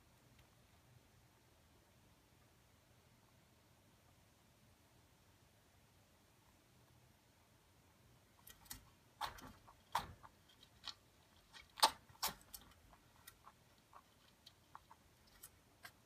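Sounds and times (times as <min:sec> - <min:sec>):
pellets being chewed: 0:08.6 - 0:16.0.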